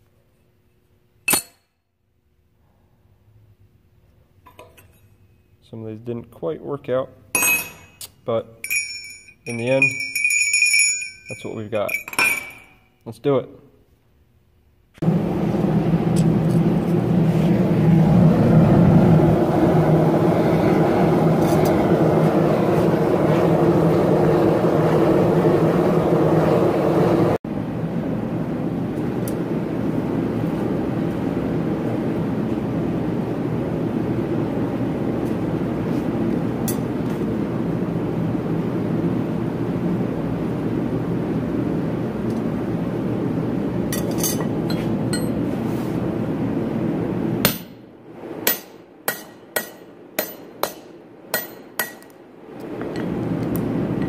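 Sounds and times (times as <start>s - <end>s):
hammer striking metal: 1.3s - 1.8s, 7.4s - 8.0s, 47.4s - 47.8s, 48.4s - 52.2s
steady rushing burner noise: 8.6s - 12.8s, 15.0s - 54.0s.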